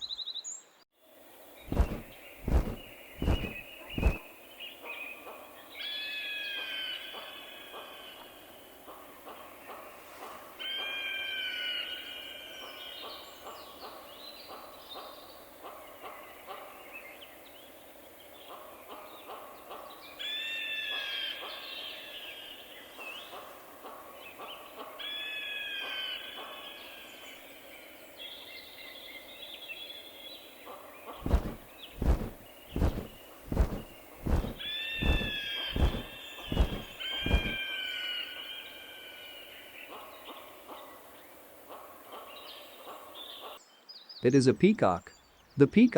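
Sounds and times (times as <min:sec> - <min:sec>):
heavy low thumps: 0:31.2 - 0:37.6.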